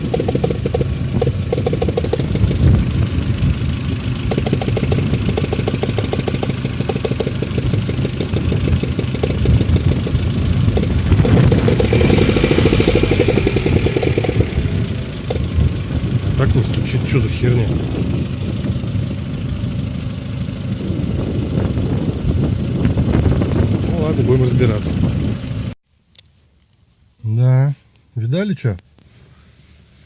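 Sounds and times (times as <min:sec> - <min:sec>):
knocking tick from engine: 0:00.0 - 0:19.1
car engine running: 0:00.0 - 0:25.8.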